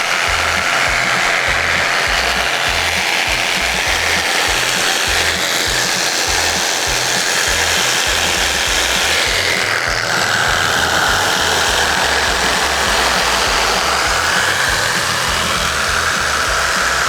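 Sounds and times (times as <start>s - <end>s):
background music with a beat: 0.0s - 17.0s
electric saw cutting foam: 0.0s - 17.0s.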